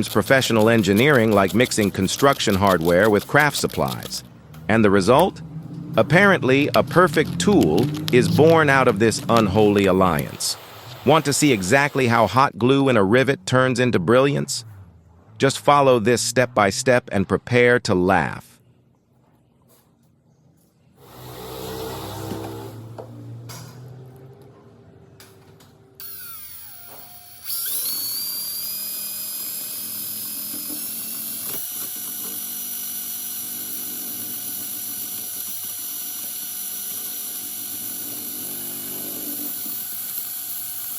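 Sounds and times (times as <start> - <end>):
electric drill whining: 0.0 - 4.3, 21.0 - 23.1, 26.0 - 40.9.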